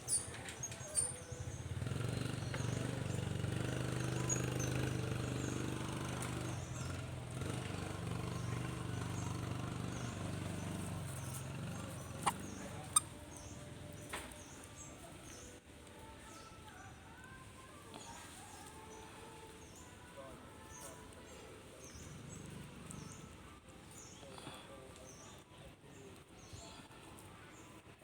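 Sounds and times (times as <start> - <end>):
engine running with low hum: 0.4 - 15.7, 17.1 - 25.5
faint high chirps: 11.8 - 13.5.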